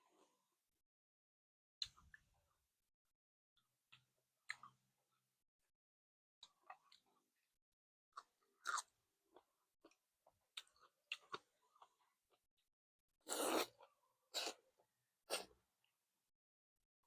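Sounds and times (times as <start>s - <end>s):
person chewing and crunching: 8.2s - 12.1s.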